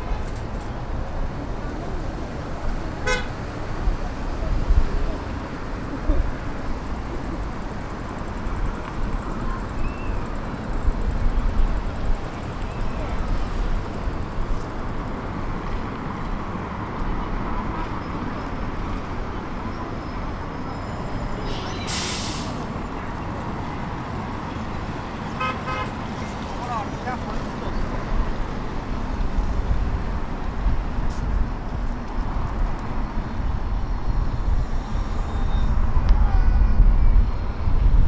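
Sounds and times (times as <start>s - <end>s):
passers-by talking: 0.0s - 38.0s
road traffic: 0.0s - 38.0s
sharp hiss: 21.5s - 22.7s.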